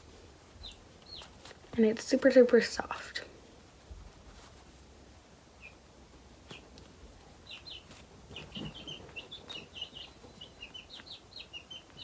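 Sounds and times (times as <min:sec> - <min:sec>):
chicks peeping: 0:00.0 - 0:01.7, 0:05.5 - 0:12.0.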